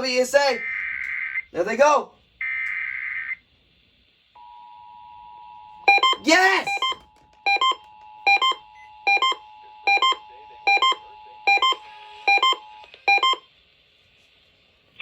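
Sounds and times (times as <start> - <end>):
electronic alert double beeps: 5.9 - 13.4.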